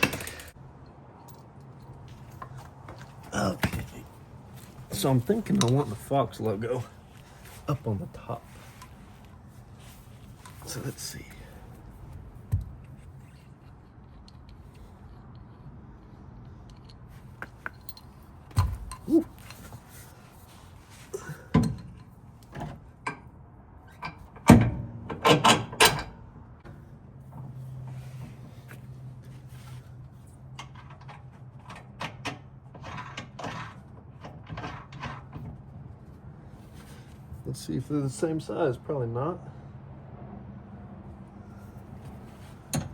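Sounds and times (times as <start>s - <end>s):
tools knocking and scraping: 0.0s - 6.1s, 12.5s - 20.1s, 30.5s - 35.6s, 42.3s - 42.9s.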